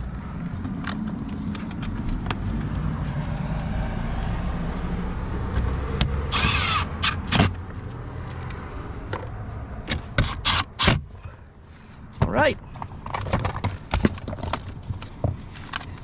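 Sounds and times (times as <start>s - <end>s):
power screwdriver whirring: 6.3s - 7.6s, 10.1s - 11.0s.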